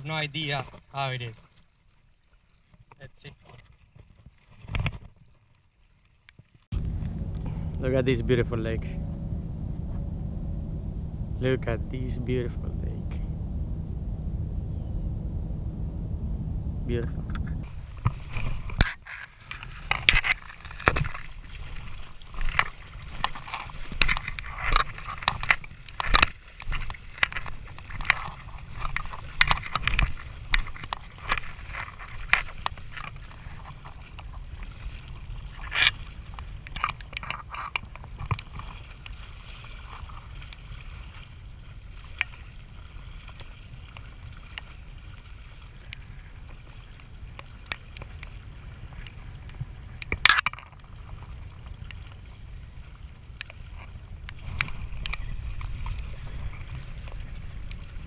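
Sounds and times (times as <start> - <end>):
water sloshing and splashing: 0.0 - 14.2, 16.0 - 58.0
wind rumble on microphone: 6.7 - 58.0.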